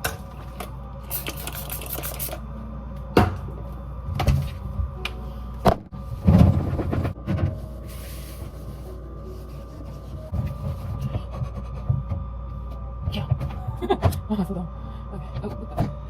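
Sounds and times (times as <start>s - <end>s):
rustling or scrubbing: 6.0s - 11.8s
objects knocking and clunking: 10.3s - 12.3s.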